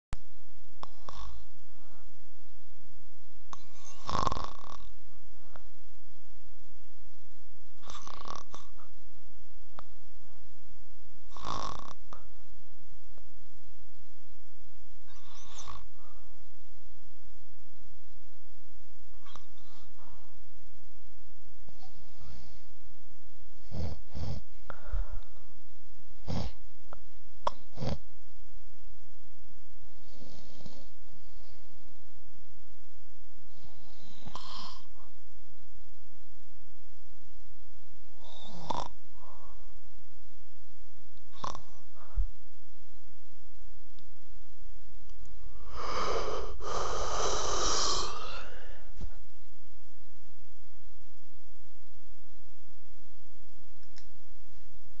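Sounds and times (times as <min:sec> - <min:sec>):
person snoring: 0:00.8 - 0:01.5, 0:03.6 - 0:04.9, 0:07.8 - 0:08.8, 0:11.3 - 0:12.0, 0:15.1 - 0:16.2, 0:26.2 - 0:26.6, 0:33.5 - 0:35.0, 0:38.2 - 0:39.6, 0:41.3 - 0:42.2, 0:45.5 - 0:49.0
faint click: 0:53.8 - 0:54.2.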